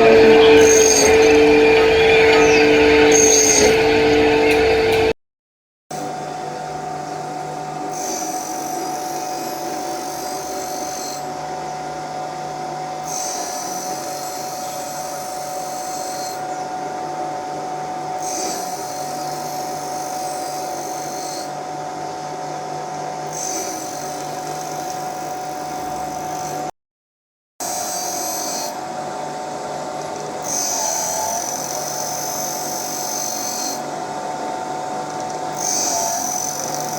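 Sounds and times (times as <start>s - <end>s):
machine spindle whine: 0.0s - 5.2s, 6.0s - 26.7s, 27.6s - 36.9s
cutting hiss: 7.9s - 11.3s, 13.0s - 16.4s.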